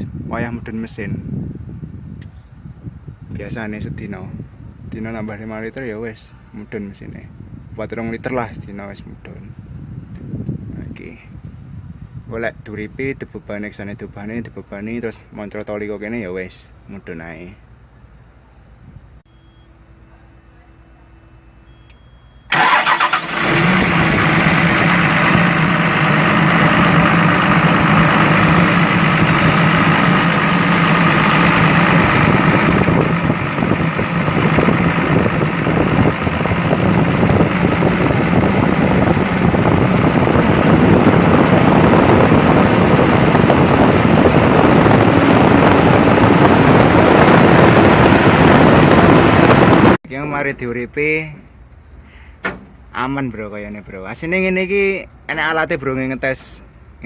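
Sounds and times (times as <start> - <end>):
excavator diesel engine running: 21.2 - 50.0.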